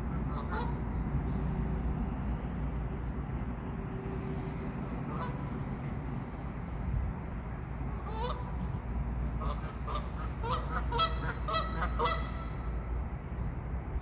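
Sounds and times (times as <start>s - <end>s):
geese honking: 9.4s - 12.7s.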